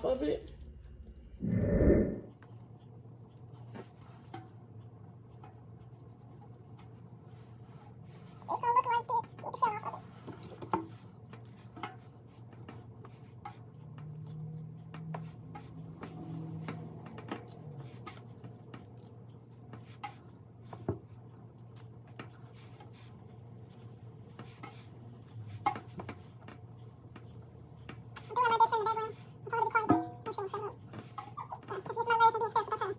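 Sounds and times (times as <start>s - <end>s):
steady low hum: 0.0s - 9.0s.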